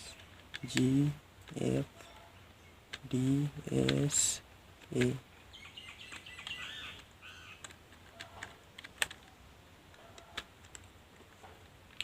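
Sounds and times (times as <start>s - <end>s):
slow keystrokes on computer keyboard: 7.6s - 9.3s.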